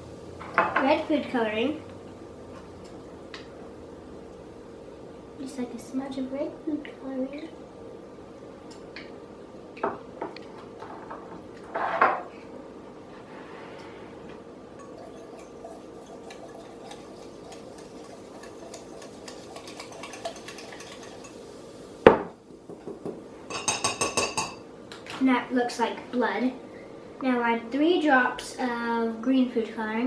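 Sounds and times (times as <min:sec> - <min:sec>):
spoon clinking against bowl: 0:14.8 - 0:21.4, 0:23.5 - 0:24.6.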